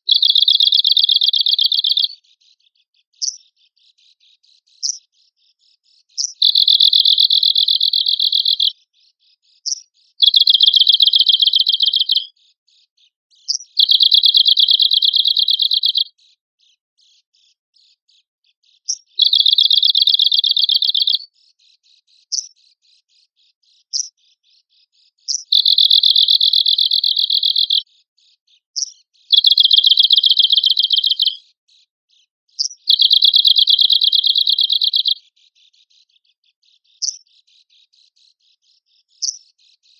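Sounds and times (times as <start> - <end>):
bird call notes: 0.0 - 2.1, 6.2 - 8.7, 10.2 - 12.3, 25.5 - 27.8, 29.3 - 31.4, 32.8 - 35.2
bird trilling: 0.0 - 2.2, 6.2 - 8.7, 9.7 - 12.3, 13.5 - 16.1, 18.9 - 21.3, 25.3 - 27.8, 28.8 - 31.4, 32.6 - 35.2, 37.0 - 37.2.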